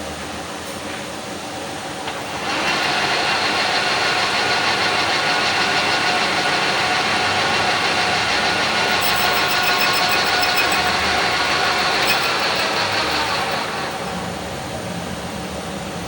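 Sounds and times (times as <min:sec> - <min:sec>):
lathe machining noise: 0:01.9 - 0:16.0
high machine tones: 0:04.4 - 0:14.8.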